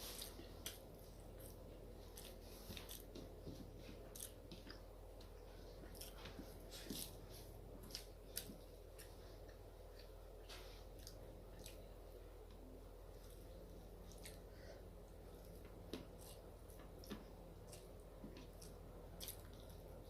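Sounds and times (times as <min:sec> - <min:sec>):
chewing food: 0:00.0 - 0:20.0
faint low hum: 0:00.0 - 0:20.0.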